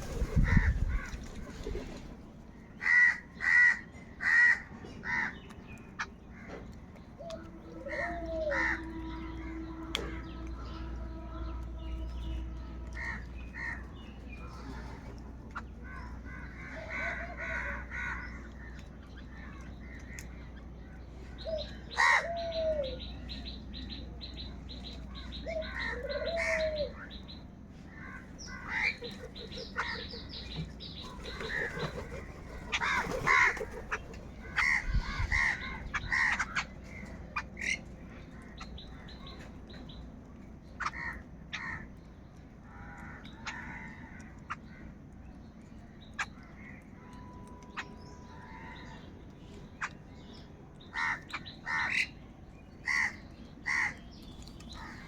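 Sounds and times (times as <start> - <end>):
crows cawing: 0.1 - 1.4, 2.8 - 5.4, 7.9 - 8.9, 15.9 - 18.4, 21.9 - 22.8, 28.0 - 30.2, 31.1 - 37.8, 40.8 - 41.9, 42.7 - 44.6, 50.9 - 52.1, 52.8 - 54.0.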